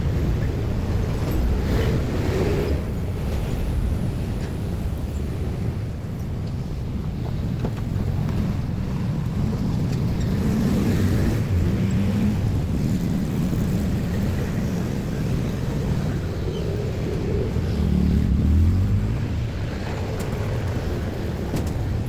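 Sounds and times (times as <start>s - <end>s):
low vehicle rumble: 7.2s - 22.0s.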